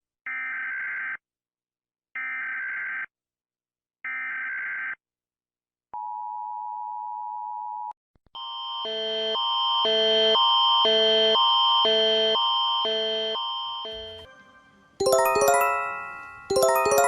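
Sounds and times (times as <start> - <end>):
multi-tone alarm: 0.3 - 1.2, 2.2 - 3.1, 4.1 - 5.0, 8.4 - 17.0
two-note attention tone: 13.9 - 17.0.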